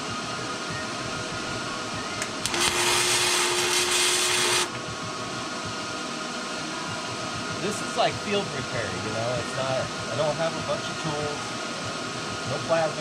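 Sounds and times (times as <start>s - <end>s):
wire feed hum: 0.0s - 13.0s
welding arc hissing crackle: 2.2s - 4.8s.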